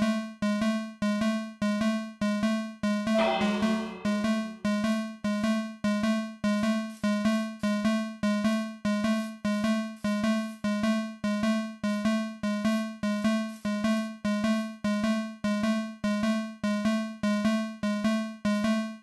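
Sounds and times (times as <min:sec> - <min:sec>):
fire alarm chime dinging: 0:03.1 - 0:04.6.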